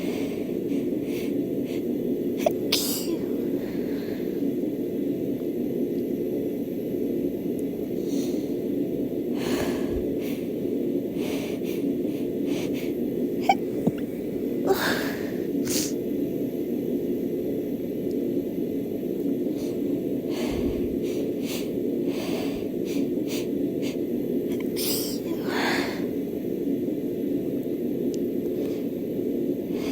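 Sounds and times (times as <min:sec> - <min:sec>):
steady background hum: 0:00.0 - 0:29.9
woman sneezing: 0:02.4 - 0:03.3, 0:24.8 - 0:25.4.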